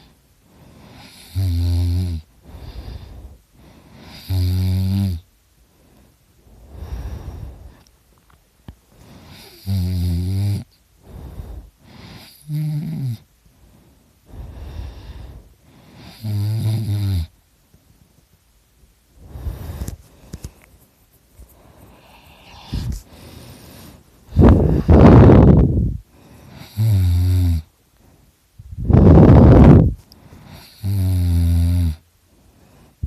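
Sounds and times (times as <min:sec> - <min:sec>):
man snoring loudly: 0:00.9 - 0:02.3, 0:04.0 - 0:05.2, 0:09.3 - 0:10.7, 0:12.0 - 0:13.2, 0:16.0 - 0:17.3, 0:26.6 - 0:27.7, 0:30.5 - 0:32.0
man breathing: 0:02.4 - 0:04.1, 0:05.6 - 0:07.9, 0:11.0 - 0:12.2, 0:13.5 - 0:16.2, 0:19.2 - 0:20.7, 0:21.4 - 0:26.8, 0:32.3 - 0:33.0.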